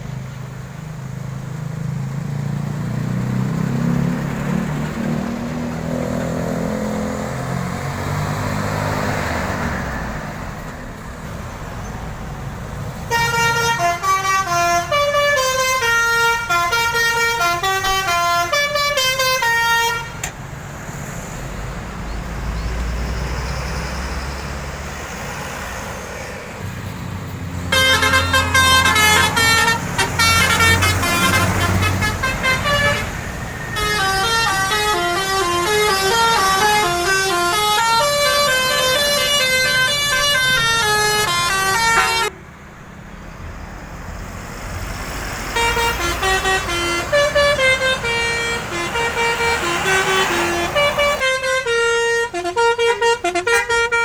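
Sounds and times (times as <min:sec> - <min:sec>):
deep rumble of bus engine: 0:00.0 - 0:54.0
multi-tone musical bus horn: 0:13.0 - 0:20.3, 0:27.6 - 0:42.4, 0:45.4 - 0:54.0.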